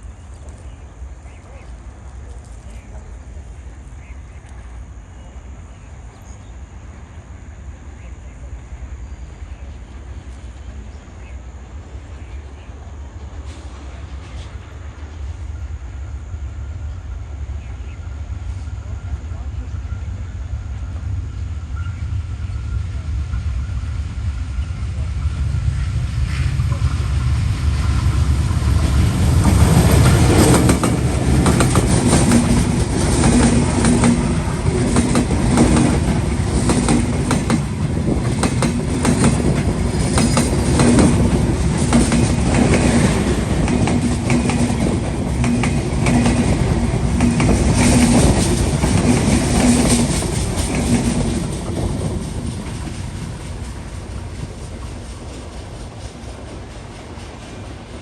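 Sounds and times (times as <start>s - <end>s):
train rumble: 0.0s - 58.0s
train wheels clacking over rail joints: 26.3s - 58.0s.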